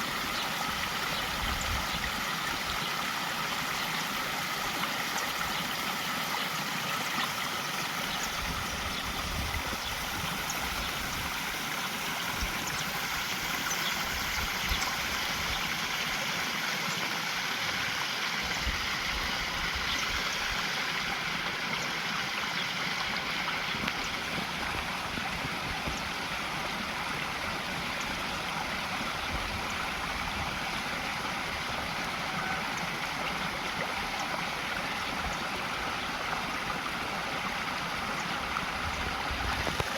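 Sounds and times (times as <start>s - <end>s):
waterfalls rushing: 6.0s - 35.0s.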